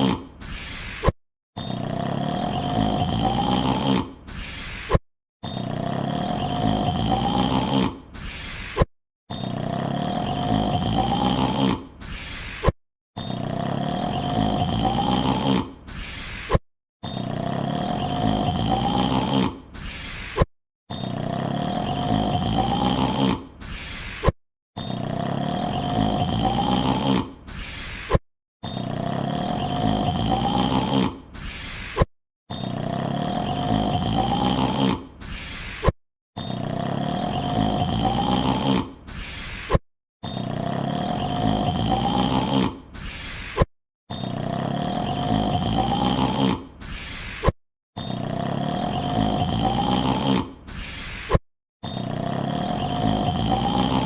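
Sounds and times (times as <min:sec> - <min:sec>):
loud yawn: 0:36.9 - 0:54.0.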